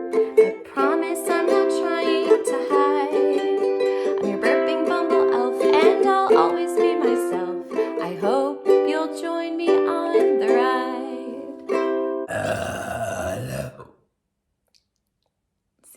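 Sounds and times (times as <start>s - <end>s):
ukulele strumming and picking: 0.0s - 12.2s
loud low burp: 12.3s - 14.0s.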